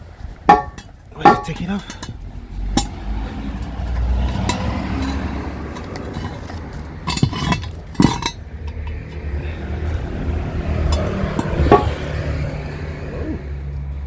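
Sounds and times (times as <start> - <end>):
low rumble of traffic: 0.0 - 14.0
scrap metal clinking: 0.4 - 3.0, 3.6 - 9.3, 10.8 - 12.2.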